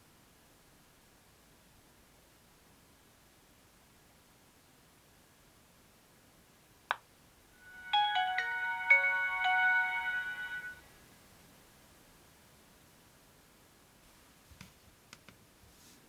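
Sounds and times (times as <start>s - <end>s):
polyphonic phone ringtone: 7.6s - 10.8s.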